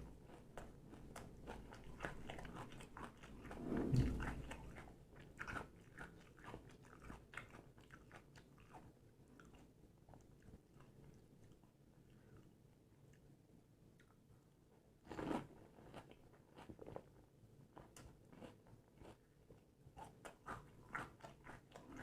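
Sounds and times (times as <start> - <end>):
crunching and chewing: 0.2 - 3.3, 15.1 - 17.2, 17.8 - 22.0.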